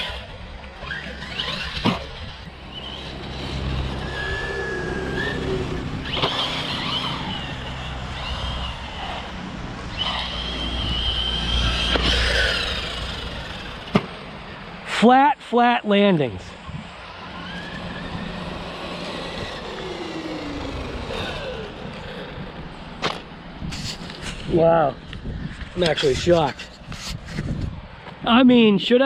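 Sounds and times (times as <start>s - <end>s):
rc car motor whining: 0.0s - 14.7s, 16.8s - 24.4s.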